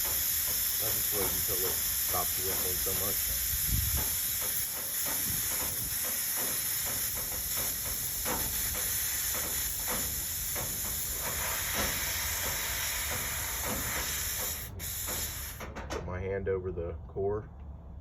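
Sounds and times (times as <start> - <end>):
air hissing from tire valve: 0.0 - 15.9.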